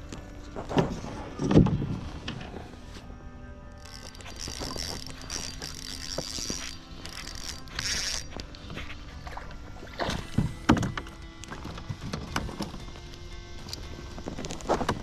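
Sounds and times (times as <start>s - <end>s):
fishing reel whirring and clicking: 3.7s - 15.0s.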